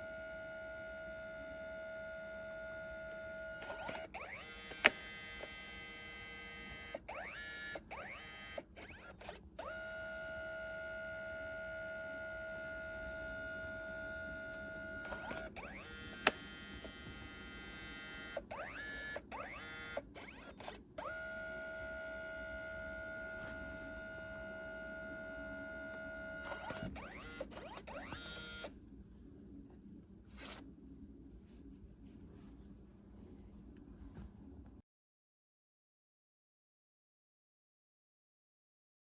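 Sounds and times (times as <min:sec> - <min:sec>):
printer motor whine: 0:00.0 - 0:28.8, 0:30.3 - 0:30.6
printer mechanism click: 0:03.6 - 0:05.6, 0:14.5 - 0:17.0, 0:25.9 - 0:28.7.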